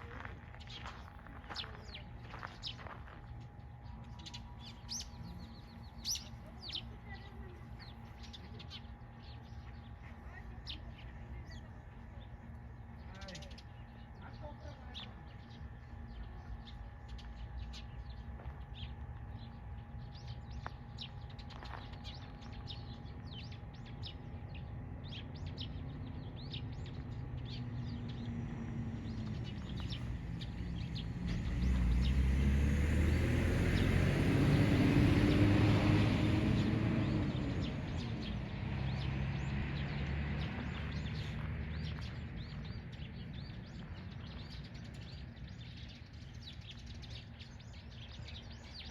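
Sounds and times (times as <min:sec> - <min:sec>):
small birds chirping: 0:00.0 - 0:48.9
vehicle passing: 0:27.4 - 0:45.6.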